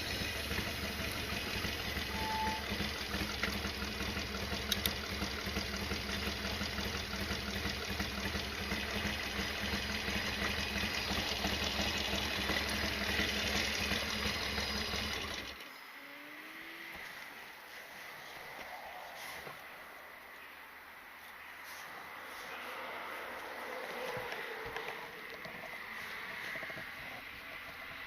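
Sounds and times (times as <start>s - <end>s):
motorcycle engine idling: 0.0s - 15.8s, 23.8s - 28.0s
faint outdoor ambience: 0.0s - 28.0s.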